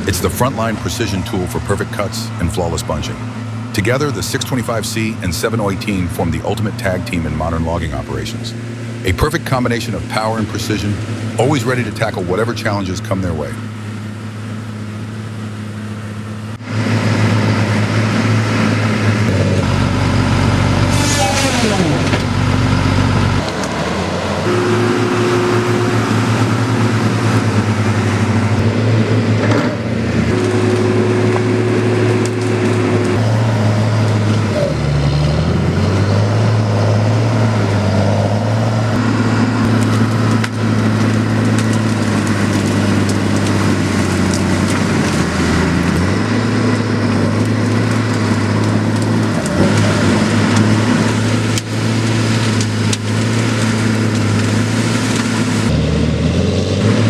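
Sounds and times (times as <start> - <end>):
diesel engine under load: 0.0 - 57.0
wood cracking and snapping: 36.8 - 57.0.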